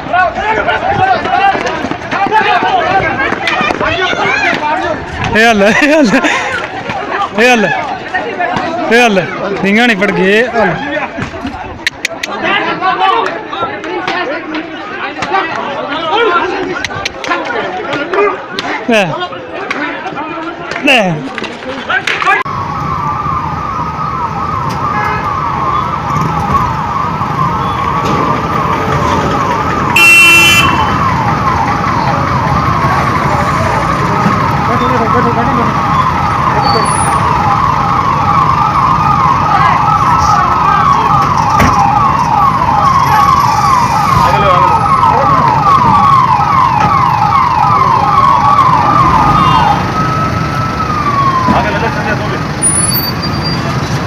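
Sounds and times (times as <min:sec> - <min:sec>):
vehicle rumble: 0:19.6 - 0:54.0
police siren wailing: 0:22.4 - 0:54.0
horn blast: 0:29.9 - 0:31.2.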